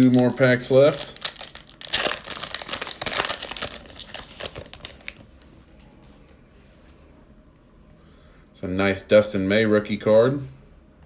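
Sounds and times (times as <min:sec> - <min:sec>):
cards ticking: 0:00.0 - 0:05.2
foil wrapper crinkling: 0:00.0 - 0:05.5.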